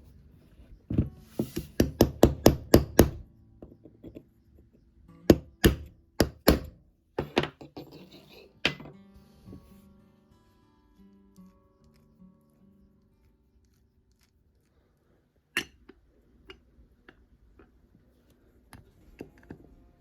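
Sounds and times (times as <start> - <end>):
light background music: 8.8 - 13.3.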